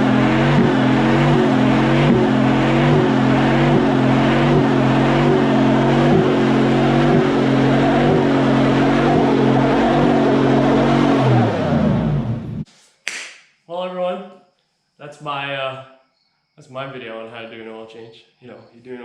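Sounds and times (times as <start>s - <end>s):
engine at high revs: 0.0s - 12.7s.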